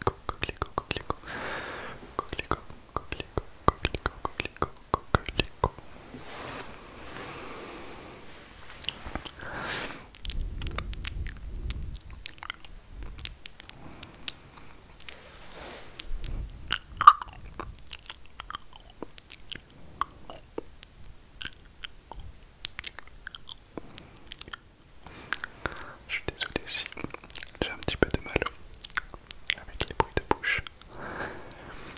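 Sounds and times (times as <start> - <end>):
wet mouth clicks and smacks: 0.0 - 1.3, 1.9 - 5.8, 10.1 - 15.2, 16.0 - 30.9.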